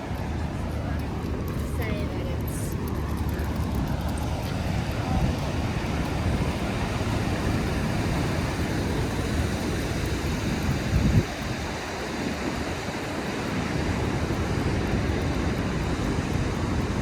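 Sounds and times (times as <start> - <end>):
wind buffeting microphone: 0.0 - 17.0
sea surf: 4.2 - 17.0.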